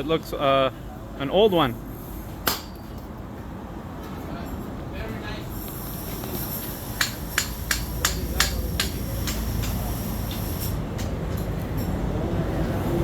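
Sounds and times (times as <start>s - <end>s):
hammer striking metal: 6.9s - 10.0s.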